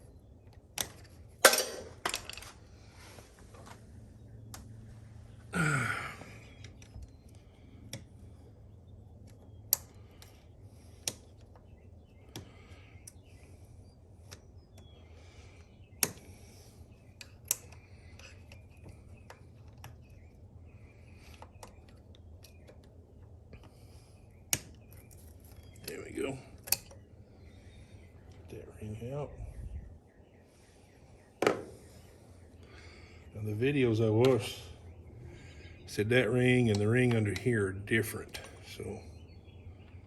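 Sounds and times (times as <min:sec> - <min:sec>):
sharp metallic clicks: 0:36.6 - 0:37.6.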